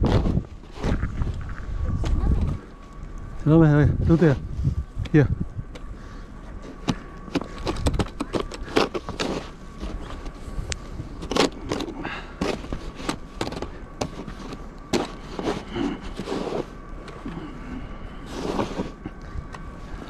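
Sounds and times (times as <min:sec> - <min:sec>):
snow shovel scraping pavement: 0:06.6 - 0:17.2, 0:18.2 - 0:19.1.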